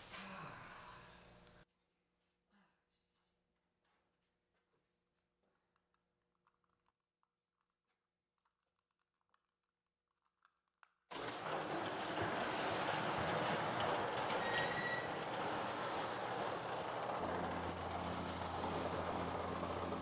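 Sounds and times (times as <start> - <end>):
loud rushing vehicle noise: 15.0 - 20.0.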